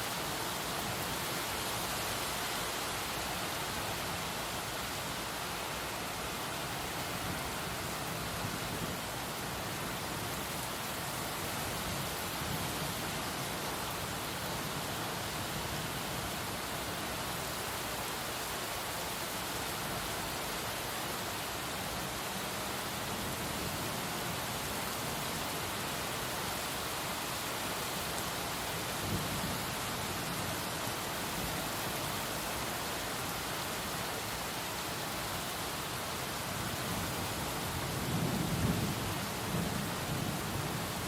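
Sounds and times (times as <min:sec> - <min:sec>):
heavy rain pouring: 0:00.0 - 0:41.0.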